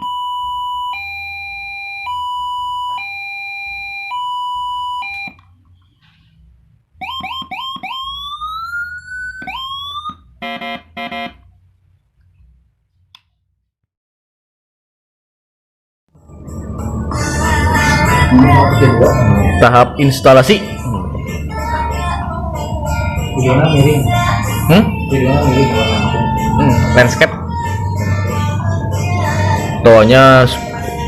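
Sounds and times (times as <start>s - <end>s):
police siren: 0.0s - 5.4s, 7.0s - 11.4s, 16.2s - 20.0s, 21.5s - 31.0s.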